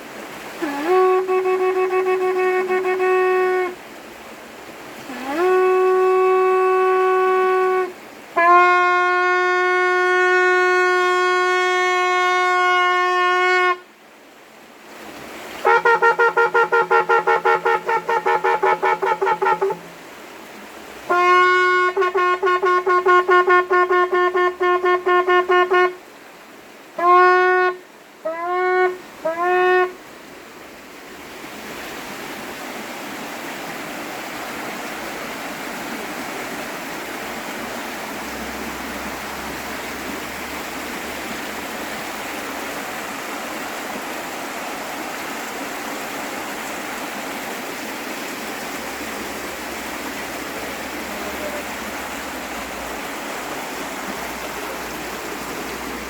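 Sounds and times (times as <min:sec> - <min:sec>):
river water rushing: 0:00.0 - 0:56.0
ram's horn blasts: 0:00.6 - 0:03.8, 0:05.0 - 0:13.9, 0:15.6 - 0:20.0, 0:21.0 - 0:26.1, 0:27.0 - 0:30.0.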